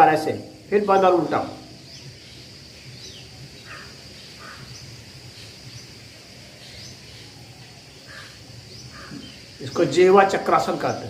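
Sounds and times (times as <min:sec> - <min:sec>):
bird chirps: 0:00.0 - 0:11.0
high insect drone: 0:00.0 - 0:11.0.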